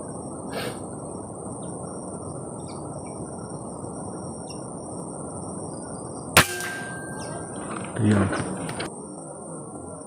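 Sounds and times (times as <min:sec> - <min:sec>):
low background hiss: 0:00.0 - 0:10.0
bird chirps: 0:02.6 - 0:04.7, 0:07.1 - 0:07.7.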